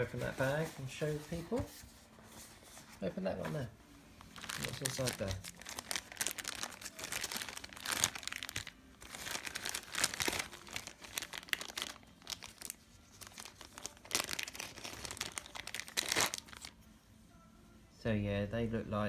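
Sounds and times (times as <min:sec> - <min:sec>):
plastic bag crinkling: 0:03.5 - 0:16.7.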